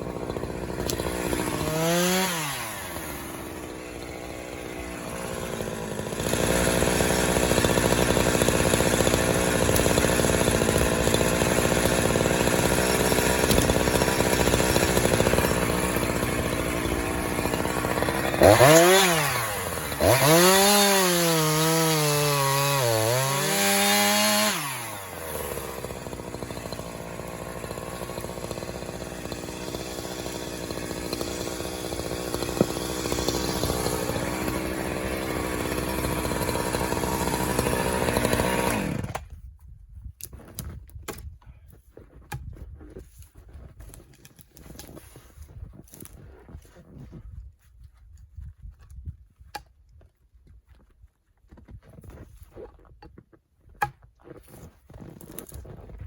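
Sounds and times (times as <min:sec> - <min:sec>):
chainsaw cutting wood: 0:00.0 - 0:39.4, 0:54.9 - 0:56.0.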